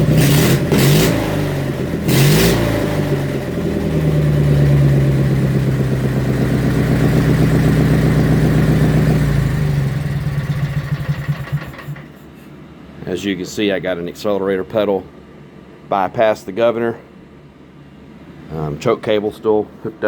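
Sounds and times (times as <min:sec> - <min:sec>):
unmuffled mower engine revving: 0:00.0 - 0:12.2.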